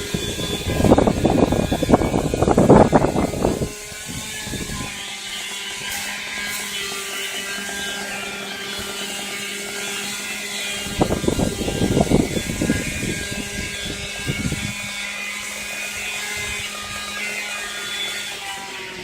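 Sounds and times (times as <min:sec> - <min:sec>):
rough low rumbling: 0:00.0 - 0:04.9, 0:10.8 - 0:14.9
small engine whining: 0:00.0 - 0:19.0.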